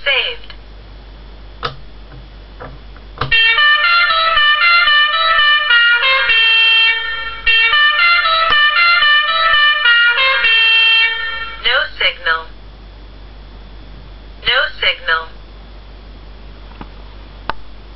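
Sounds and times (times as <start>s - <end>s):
musical horn tune: 3.3s - 11.7s.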